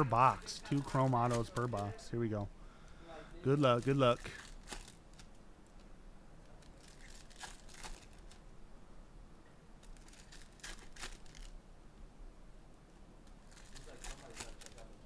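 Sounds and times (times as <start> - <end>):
packaging tearing and crinkling: 0.0 - 2.0, 3.5 - 5.4, 6.4 - 8.4, 9.8 - 11.6, 13.4 - 15.0.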